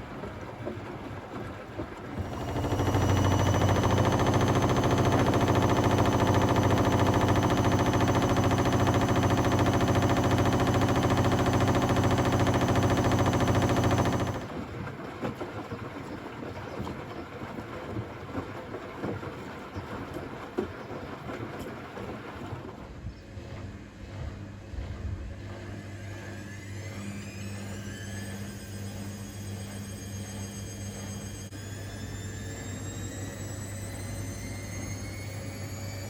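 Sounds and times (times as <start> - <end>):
washing machine spinning: 0.0 - 16.0, 23.7 - 36.0
faint high whine: 26.2 - 36.0.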